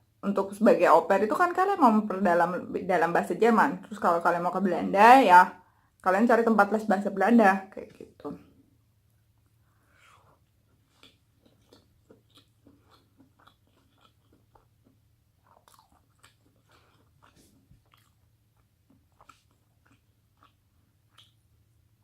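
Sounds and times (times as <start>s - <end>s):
person chewing food: 9.1s - 22.0s.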